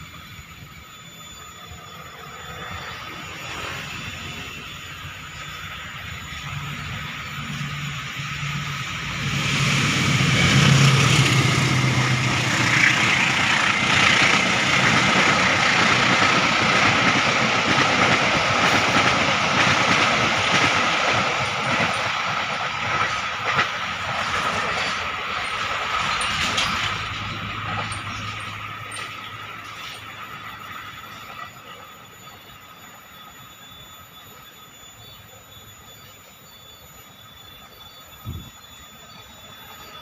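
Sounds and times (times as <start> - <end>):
locomotive engine hum: 0.0 - 33.4
train wheel squeal: 0.0 - 40.0
train wheels clacking: 1.7 - 32.6.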